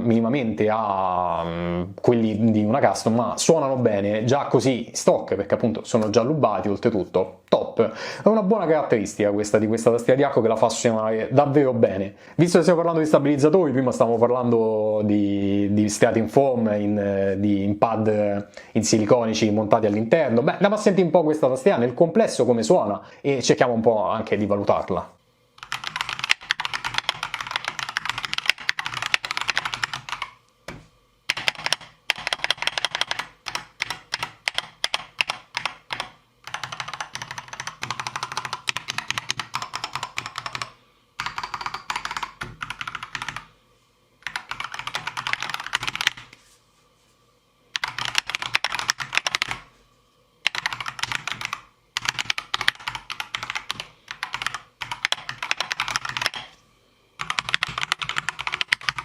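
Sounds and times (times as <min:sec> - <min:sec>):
mechanical keyboard typing: 0:25.6 - 0:30.4, 0:31.3 - 0:43.5, 0:44.2 - 0:46.3, 0:47.8 - 0:49.7, 0:50.4 - 0:56.6, 0:57.2 - 0:59.0.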